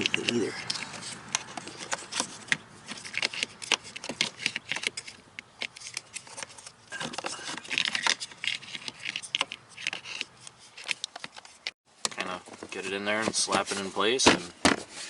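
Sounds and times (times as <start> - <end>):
plastic filter housing clicks and scrapes: 0.0 - 11.7.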